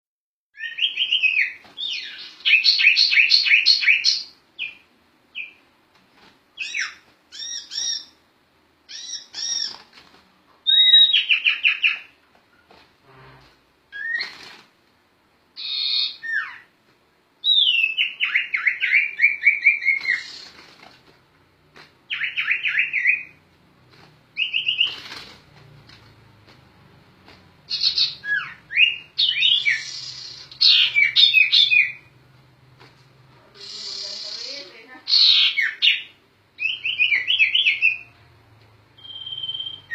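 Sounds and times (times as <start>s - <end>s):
songbird chirps and trills: 0.6s - 5.7s, 6.6s - 8.2s, 8.9s - 9.9s, 10.6s - 12.7s, 15.6s - 16.7s, 17.4s - 20.8s, 22.1s - 23.5s, 24.3s - 25.2s, 27.6s - 32.3s, 33.1s - 39.9s.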